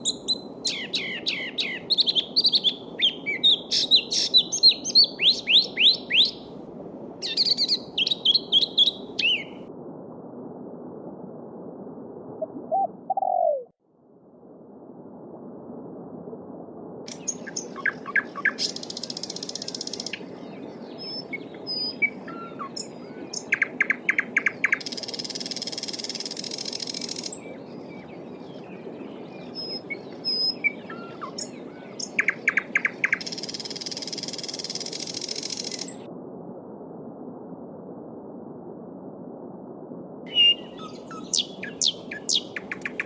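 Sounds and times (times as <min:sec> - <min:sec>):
bird chirps: 0:00.0 - 0:06.4, 0:07.2 - 0:09.6, 0:40.3 - 0:43.0
songbird trilling song: 0:00.0 - 0:06.5, 0:07.2 - 0:09.6, 0:17.1 - 0:36.0, 0:40.3 - 0:43.0.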